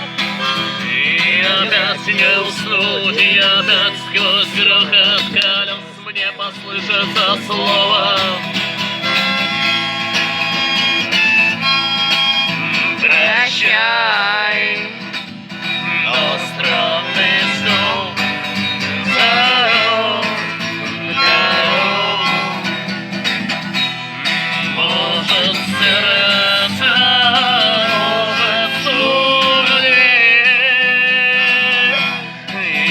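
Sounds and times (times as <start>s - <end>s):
person singing: 0.0s - 8.6s, 15.8s - 22.9s, 24.3s - 32.9s
acoustic guitar playing: 0.0s - 32.9s.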